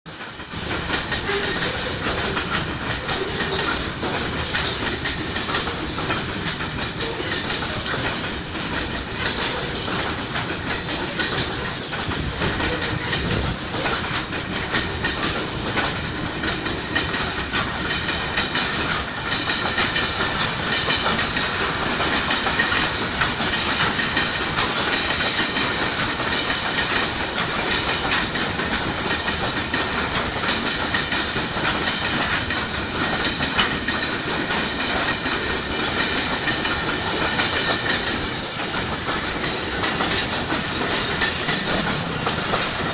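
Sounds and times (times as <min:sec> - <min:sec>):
train wheels clattering over rails: 0:00.1 - 0:42.9.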